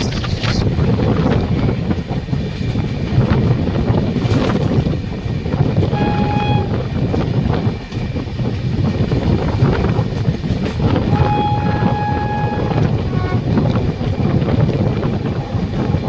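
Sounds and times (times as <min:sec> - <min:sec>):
train wheels rumbling on track: 0:00.0 - 0:16.0
train horn toot: 0:05.8 - 0:07.2, 0:10.9 - 0:14.2.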